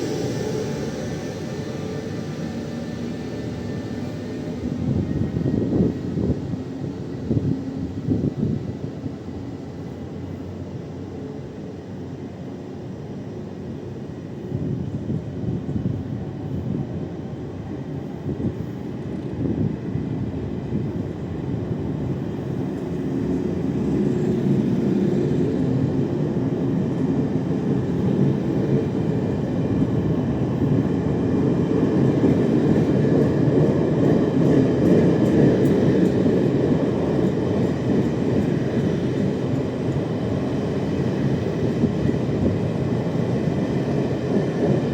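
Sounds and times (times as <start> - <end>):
wheel and rail rumble: 14.4 - 44.9.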